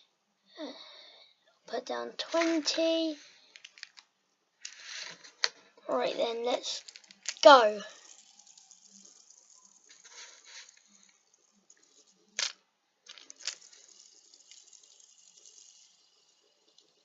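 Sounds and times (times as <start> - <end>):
handling and rustling: 2.2 - 7.8, 12.4 - 13.9.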